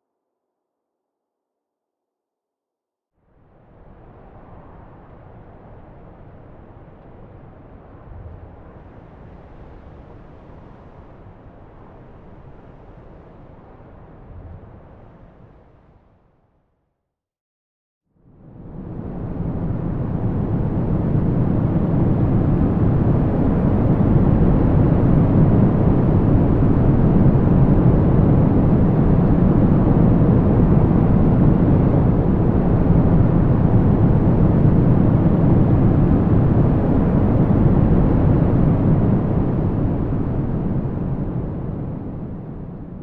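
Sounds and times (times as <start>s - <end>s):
strong wind rumbling: 18.6s - 43.0s.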